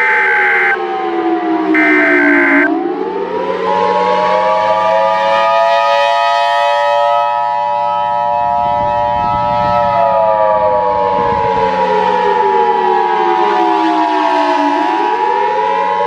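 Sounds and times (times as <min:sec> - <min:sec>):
warning siren wailing: 0:00.0 - 0:00.8, 0:01.8 - 0:02.7.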